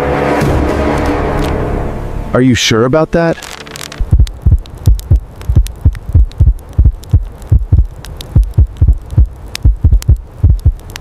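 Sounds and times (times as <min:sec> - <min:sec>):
faint clicks: 0:03.4 - 0:11.0
rapid low thumps: 0:04.0 - 0:11.0.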